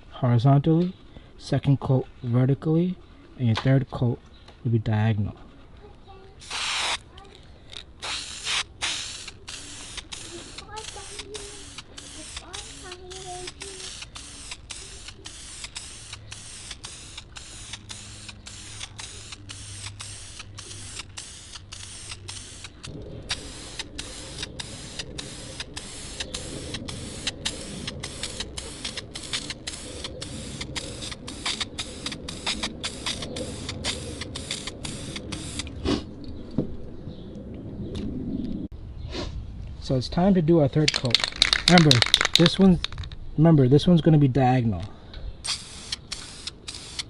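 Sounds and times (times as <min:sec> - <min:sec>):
spray can hissing: 0:06.4 - 0:07.1, 0:07.7 - 0:35.8, 0:45.4 - 0:47.0
low rumble: 0:22.1 - 0:40.4.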